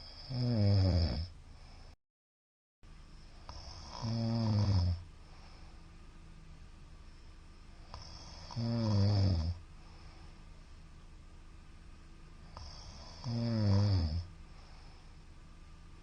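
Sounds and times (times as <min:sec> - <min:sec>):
man snoring: 0:00.0 - 0:01.4, 0:03.4 - 0:05.1, 0:07.9 - 0:09.6, 0:12.5 - 0:14.9.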